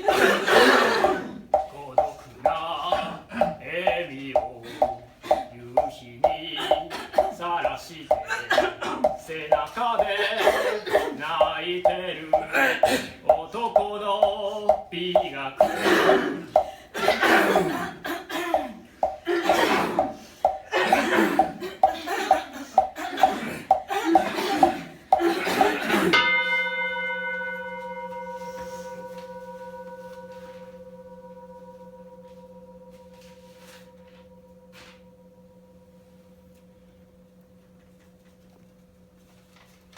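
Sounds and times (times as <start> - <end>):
people clearing their throats: 0.0 - 11.6, 12.3 - 13.2, 15.2 - 26.3
bowl bell ringing: 0.1 - 7.4, 22.8 - 38.4.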